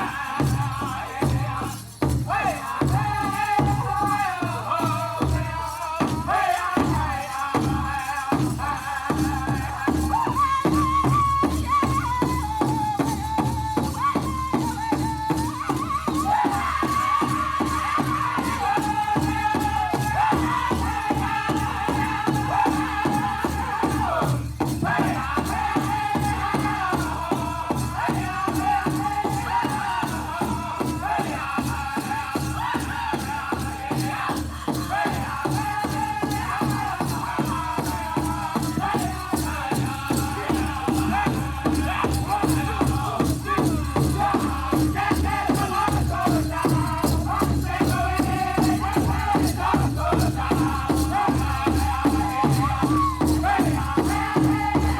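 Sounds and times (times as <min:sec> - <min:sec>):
men singing in high unison: 0:00.0 - 0:54.9
big drum steady beat: 0:16.7 - 0:54.9.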